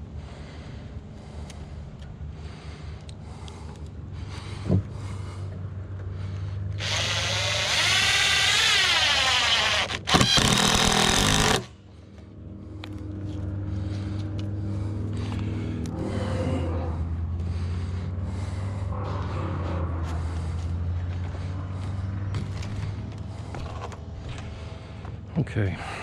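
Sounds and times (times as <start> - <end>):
steady low hum: 0.0 - 26.0
power drill running: 6.8 - 11.8.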